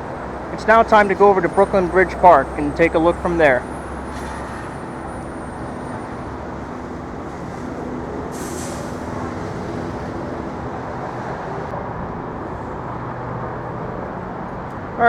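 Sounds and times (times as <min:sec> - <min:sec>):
street traffic noise: 0:00.0 - 0:15.0
brief hiss: 0:08.3 - 0:09.1.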